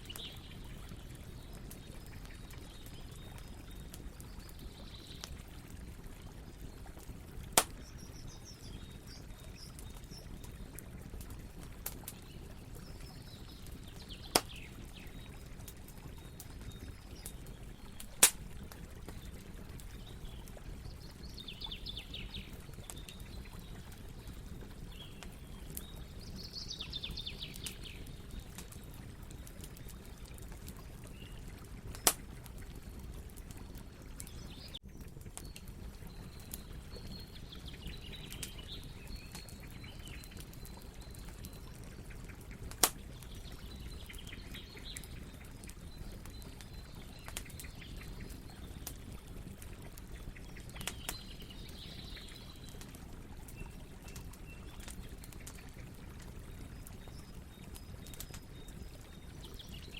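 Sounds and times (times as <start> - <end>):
campfire crackling: 0.0 - 59.9
fire pops: 6.9 - 8.0, 9.5 - 14.7, 16.4 - 20.4, 31.8 - 32.8, 42.5 - 43.7, 48.5 - 51.2.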